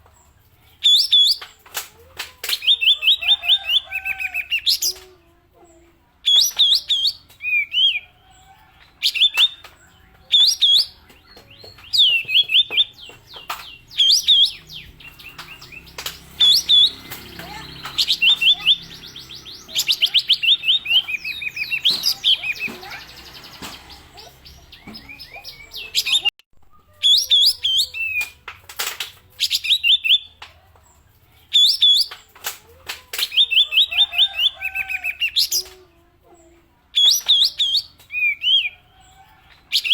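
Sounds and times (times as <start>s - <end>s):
songbird rapid chirping: 0.0s - 26.3s, 26.9s - 39.9s
sharp snapping bird notes: 0.9s - 3.0s, 9.0s - 26.3s, 27.7s - 30.6s, 31.6s - 33.8s, 35.0s - 35.8s.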